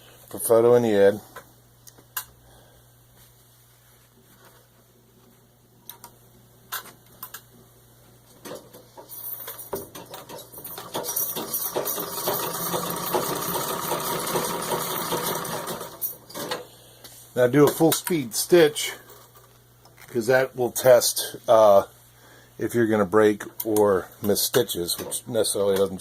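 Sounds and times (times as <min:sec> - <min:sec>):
sewing machine clicks: 0:10.0 - 0:16.4
sewing machine rapid clatter: 0:10.1 - 0:16.2.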